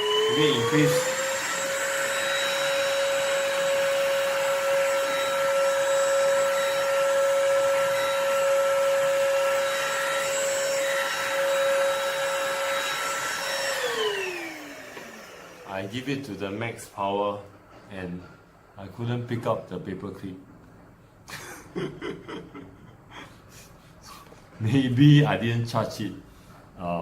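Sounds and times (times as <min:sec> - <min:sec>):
vacuum cleaner motor whine: 0:00.0 - 0:16.6.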